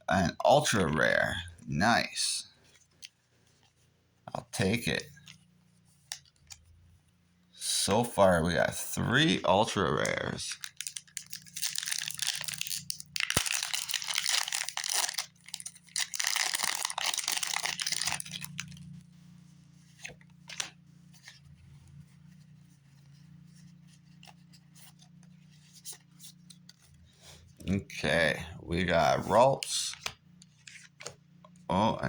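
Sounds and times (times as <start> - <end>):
cards rustling: 2.0 - 6.9, 7.6 - 19.0, 19.7 - 27.9, 28.8 - 32.0
foil wrapper crinkling and tearing: 10.2 - 18.9.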